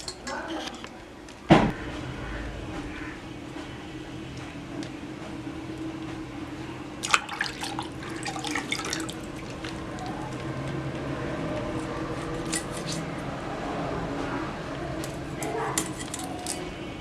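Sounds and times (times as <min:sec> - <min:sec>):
steady low hum: 0:00.0 - 0:17.0
water splashing and dripping: 0:07.0 - 0:10.4.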